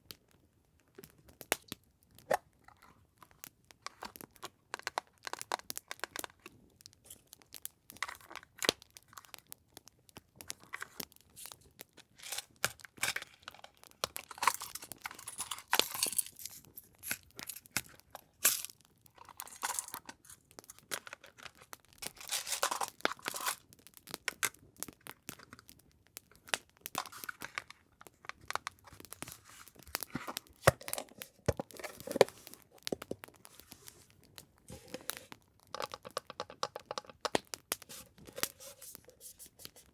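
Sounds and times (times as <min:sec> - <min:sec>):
paper rustling and crinkling: 0:10.6 - 0:23.6, 0:27.0 - 0:34.1, 0:34.7 - 0:35.4, 0:37.8 - 0:39.9.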